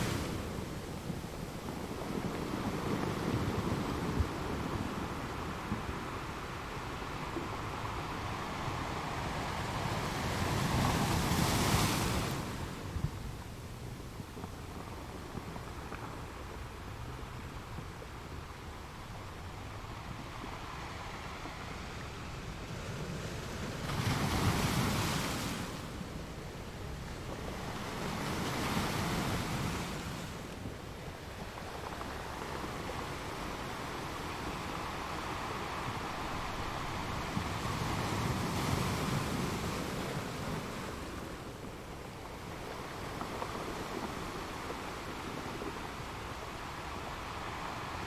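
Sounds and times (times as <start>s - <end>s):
sea waves washing on shore: 0.0s - 48.0s.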